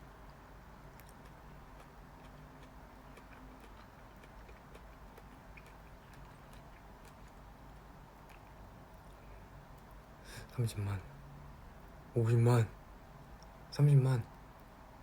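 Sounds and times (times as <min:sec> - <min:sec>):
faint small ticks and clicks: 0:00.2 - 0:07.4.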